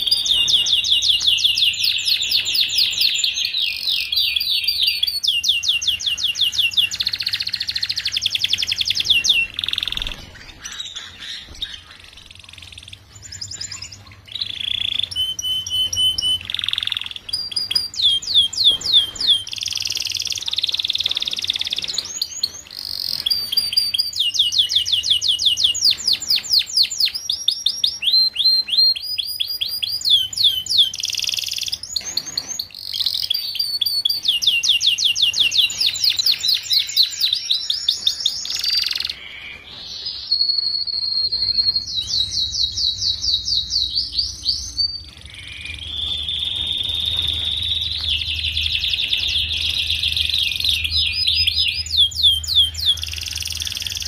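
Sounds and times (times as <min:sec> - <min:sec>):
canary trilling song: 0:00.0 - 0:54.0.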